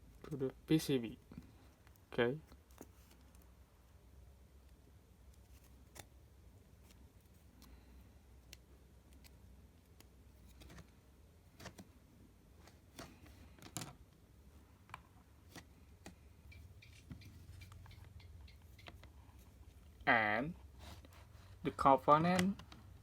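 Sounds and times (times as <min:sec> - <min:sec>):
small clicks and taps of components: 0:08.4 - 0:10.1.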